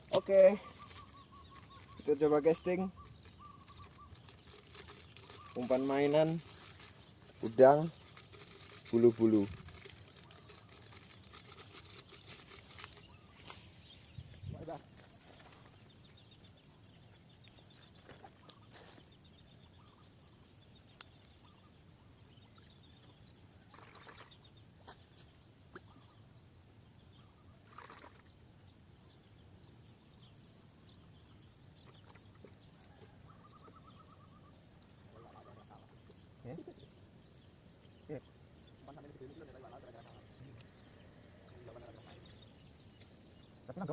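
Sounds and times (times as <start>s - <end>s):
bird trill: 0.0s - 14.1s
distant bird chirps: 0.0s - 43.9s.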